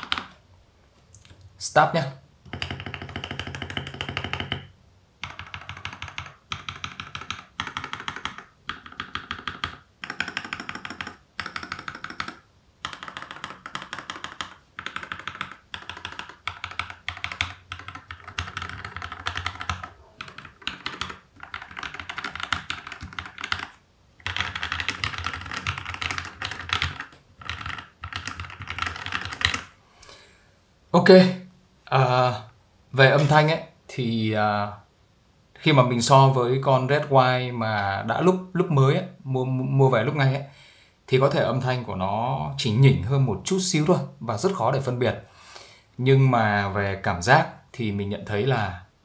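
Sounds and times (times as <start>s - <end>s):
typing on mechanical keyboard: 0.0s - 0.4s, 2.5s - 29.7s.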